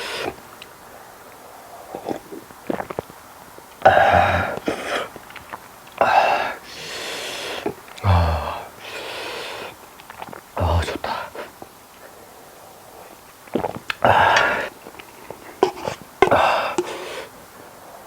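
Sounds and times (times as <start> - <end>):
man breathing loudly: 6.0 - 9.8, 16.3 - 18.0
man grunting or burping: 8.0 - 8.7.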